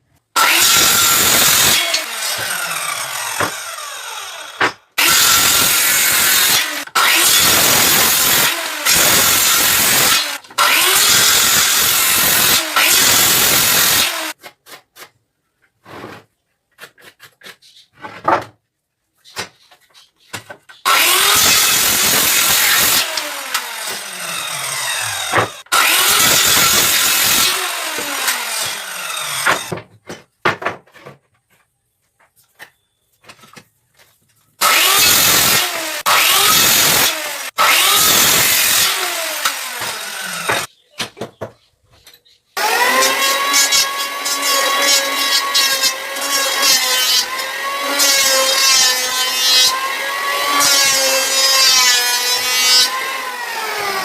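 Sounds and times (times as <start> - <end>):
power saw cutting wood: 0.4 - 14.4, 20.9 - 29.8, 34.6 - 40.7, 42.6 - 54.0.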